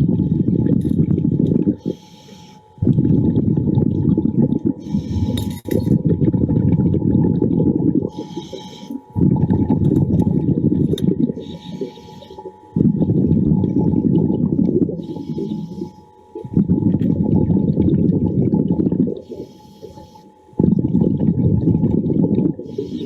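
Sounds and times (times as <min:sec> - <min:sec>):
exhaled bubbles rumbling: 0:00.0 - 0:02.0, 0:02.8 - 0:23.0
regulator inhale hiss: 0:01.8 - 0:02.7, 0:04.8 - 0:05.6, 0:08.1 - 0:09.1, 0:11.4 - 0:12.5, 0:15.0 - 0:16.2, 0:19.2 - 0:20.4, 0:22.6 - 0:23.0.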